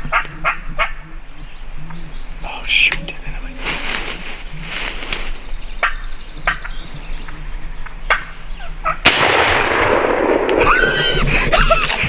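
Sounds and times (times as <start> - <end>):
turkey clucking: 0.0 - 9.0.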